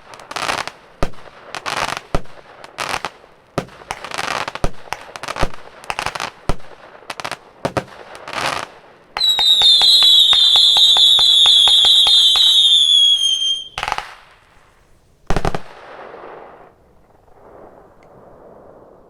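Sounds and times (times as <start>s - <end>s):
loud fireworks bangs: 0.0s - 14.5s
fireworks rapid shots: 0.0s - 14.6s, 15.3s - 16.7s
fireworks crackle: 0.0s - 19.0s
fireworks whistle: 9.2s - 14.2s.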